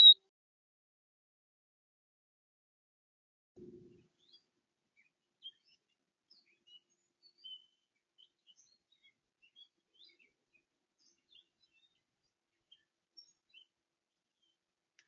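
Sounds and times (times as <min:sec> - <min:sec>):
songbirds chirping: 0:03.6 - 0:15.0.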